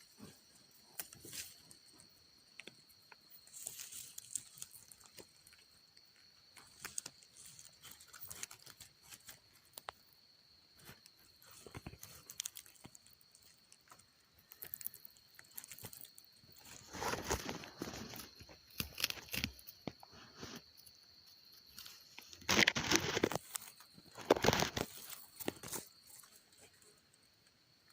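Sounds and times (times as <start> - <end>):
faint rustling: 10.8 - 27.0.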